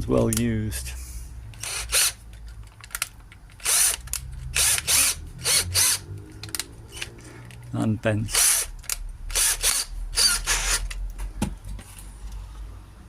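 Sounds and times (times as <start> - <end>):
power drill spinning: 1.6 - 2.2, 3.6 - 7.3, 8.3 - 11.0.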